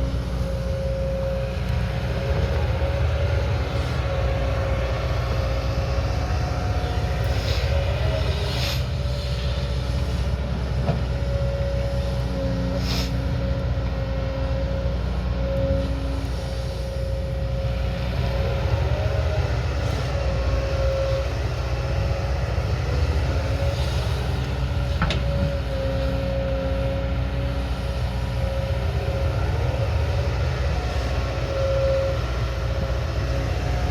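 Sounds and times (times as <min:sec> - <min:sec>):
diesel engine under load: 0:00.0 - 0:33.9
high whine: 0:00.0 - 0:33.9.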